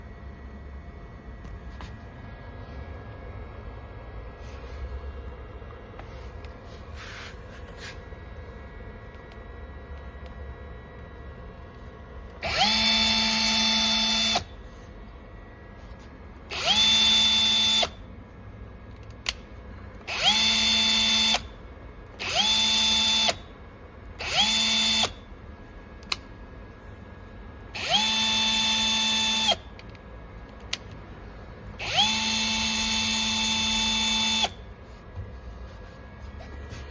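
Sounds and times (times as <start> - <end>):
cordless drill whining: 12.4 - 14.5, 16.5 - 18.0, 20.1 - 21.4, 22.2 - 23.4, 24.2 - 25.1, 27.8 - 29.6, 31.8 - 34.6.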